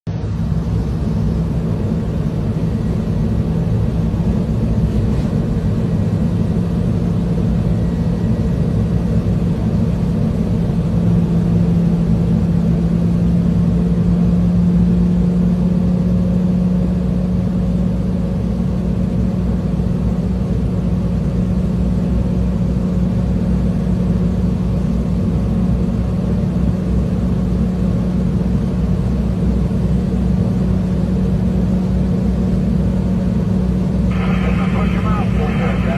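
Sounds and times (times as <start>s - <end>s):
heavy engine droning: 34.0s - 35.9s.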